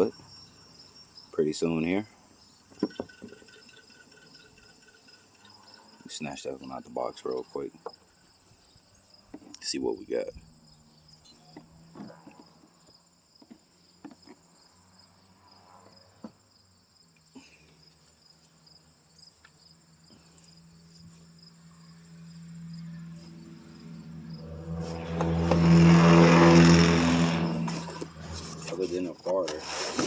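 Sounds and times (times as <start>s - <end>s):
crickets chirping: 0.0s - 26.8s
vehicle with loud exhaust: 2.1s - 9.5s, 20.1s - 30.0s.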